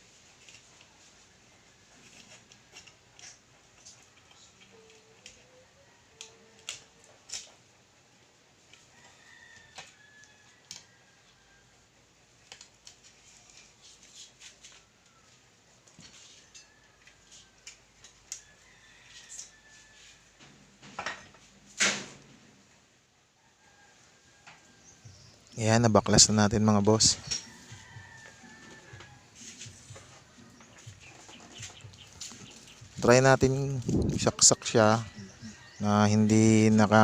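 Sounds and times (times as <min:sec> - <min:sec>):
rooster crowing: 0:08.9 - 0:11.8, 0:18.4 - 0:20.4, 0:23.5 - 0:25.3, 0:26.9 - 0:30.6, 0:34.3 - 0:35.9.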